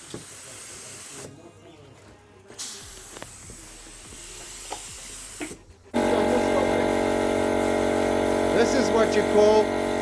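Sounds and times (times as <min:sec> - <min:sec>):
paint spray gun hissing: 0:02.6 - 0:10.0.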